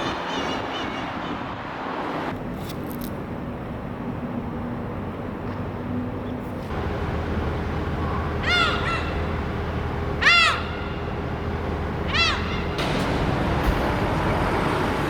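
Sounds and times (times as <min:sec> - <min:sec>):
crow cawing: 0:08.3 - 0:09.4, 0:10.2 - 0:11.1, 0:12.1 - 0:12.8.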